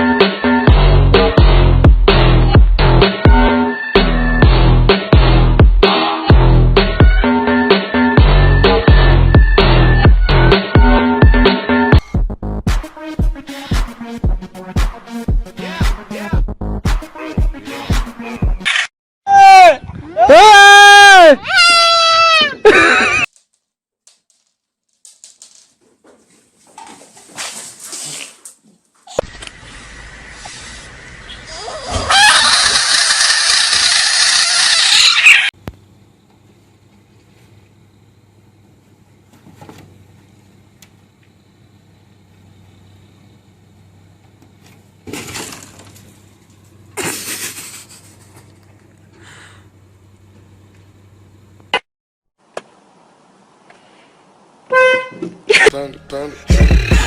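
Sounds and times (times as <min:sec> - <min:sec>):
loud animal cry: 0:21.4 - 0:23.2, 0:31.3 - 0:35.6
rustling: 0:23.3 - 0:29.1.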